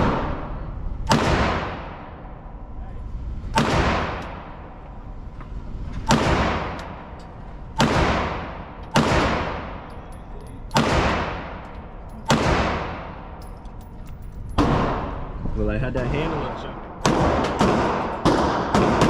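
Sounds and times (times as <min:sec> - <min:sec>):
gunshots with echo: 0:07.8 - 0:09.9, 0:10.8 - 0:11.6, 0:12.3 - 0:13.3, 0:16.8 - 0:19.0.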